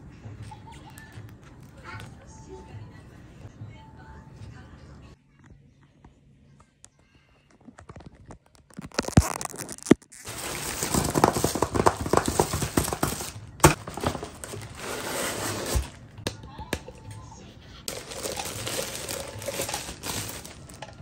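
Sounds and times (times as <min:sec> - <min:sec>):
wrapping crinkling and tearing: 0:07.7 - 0:16.2, 0:17.9 - 0:21.0.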